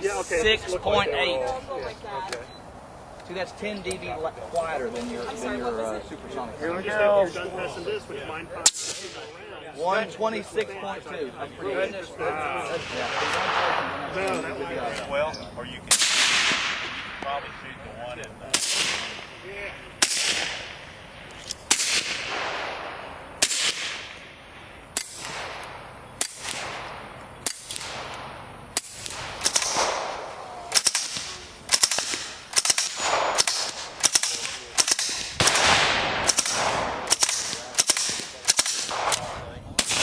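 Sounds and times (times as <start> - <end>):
suppressed gunshots: 12.8 - 14.0, 15.9 - 17.4, 20.0 - 21.0, 21.6 - 24.3, 25.0 - 40.0.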